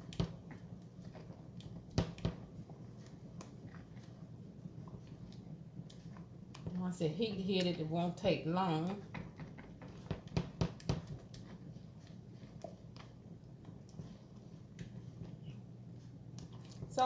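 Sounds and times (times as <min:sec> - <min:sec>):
utensil knocking in a saucepan: 0:09.2 - 0:11.1.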